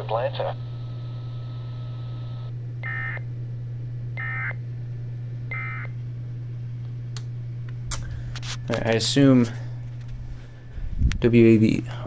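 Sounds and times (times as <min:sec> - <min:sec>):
radio hiss: 0:00.0 - 0:02.5
steady low hum: 0:00.0 - 0:12.0.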